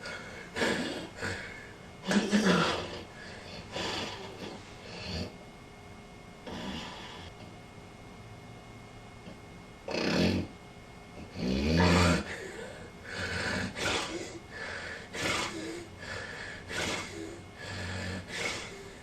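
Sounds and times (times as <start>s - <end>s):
person snoring: 0.0s - 5.4s, 6.4s - 7.3s, 9.9s - 10.5s, 11.3s - 19.0s.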